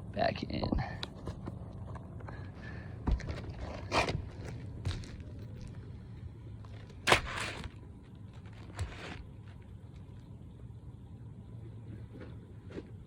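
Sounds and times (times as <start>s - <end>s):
steady low hum: 0.0s - 13.0s
roof shingles scraping and knocking: 6.8s - 9.6s.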